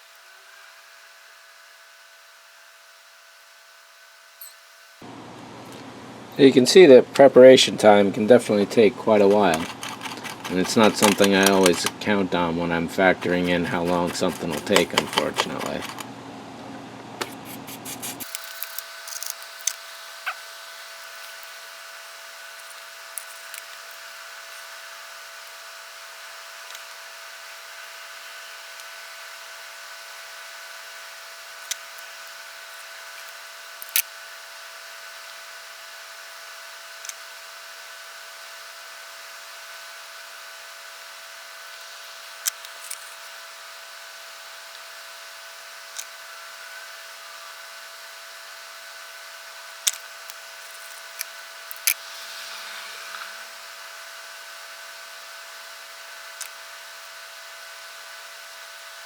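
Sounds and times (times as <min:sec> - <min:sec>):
steady electrical hum: 0:00.0 - 0:59.0
clicks of hand tools and parts: 0:09.2 - 0:12.0, 0:13.2 - 0:16.0.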